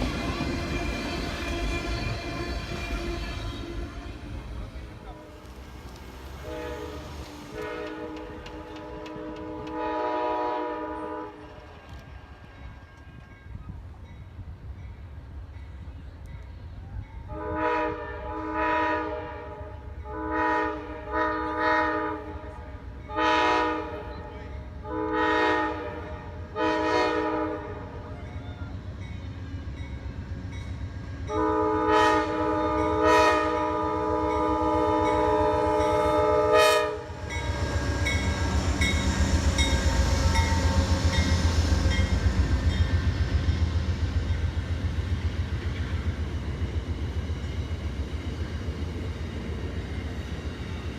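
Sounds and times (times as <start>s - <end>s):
train wheels clacking: 0.0s - 16.6s, 37.0s - 50.9s
train rumble: 0.0s - 50.9s
locomotive air horn blasts: 0.3s - 4.5s, 6.4s - 11.5s, 17.3s - 28.1s, 31.3s - 38.9s.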